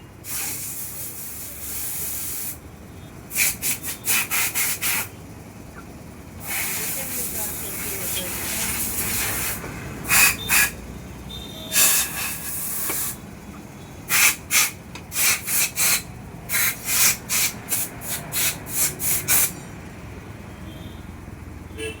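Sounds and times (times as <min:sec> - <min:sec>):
air blow gun hissing blasts: 0:00.2 - 0:02.6, 0:03.3 - 0:05.1, 0:06.4 - 0:10.8, 0:11.7 - 0:13.2, 0:14.1 - 0:19.6.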